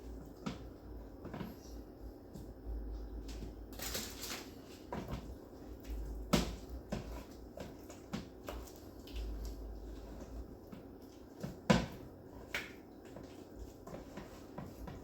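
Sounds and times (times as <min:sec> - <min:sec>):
wet rustle: 0:03.2 - 0:15.0.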